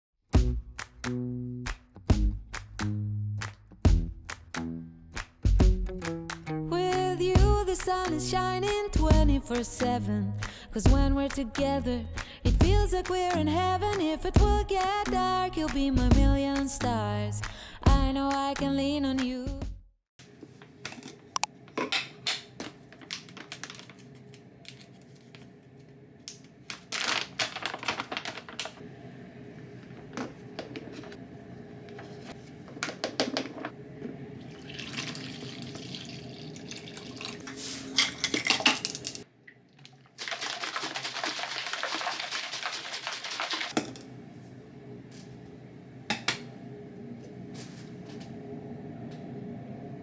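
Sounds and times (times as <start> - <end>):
kitchen items clattering: 20.8 - 24.1, 26.7 - 28.8, 32.2 - 33.8, 34.6 - 39.2, 39.9 - 44.1
water running from a tap: 34.5 - 37.6, 40.1 - 43.8.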